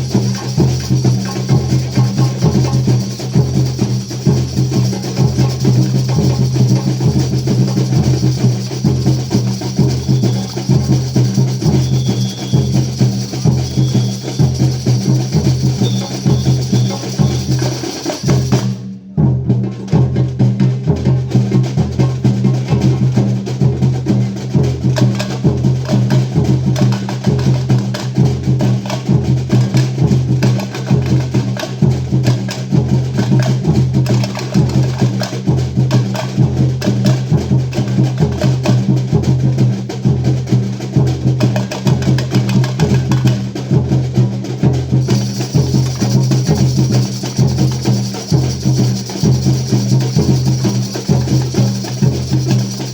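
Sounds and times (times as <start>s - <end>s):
band playing instrumental: 0.0s - 18.9s, 44.5s - 52.9s
percussion beat: 0.0s - 52.9s.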